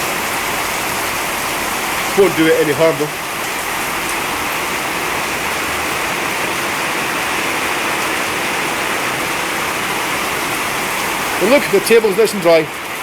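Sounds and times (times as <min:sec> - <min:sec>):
heavy rain pouring: 0:00.0 - 0:13.0.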